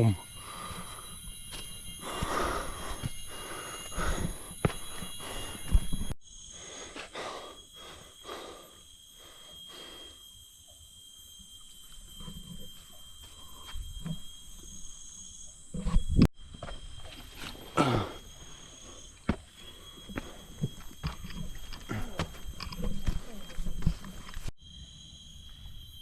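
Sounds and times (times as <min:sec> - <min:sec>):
jungle insects droning: 0:00.0 - 0:26.0
person breathing hard: 0:00.3 - 0:01.3, 0:02.0 - 0:05.9, 0:06.5 - 0:10.3.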